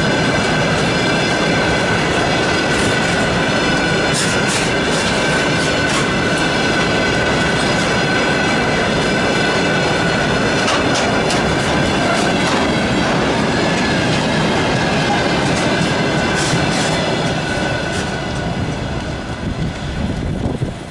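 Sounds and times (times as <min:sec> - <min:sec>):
wheels clicking over rail joints: 0:00.0 - 0:20.8
train wheels rumbling on rails: 0:00.0 - 0:20.9.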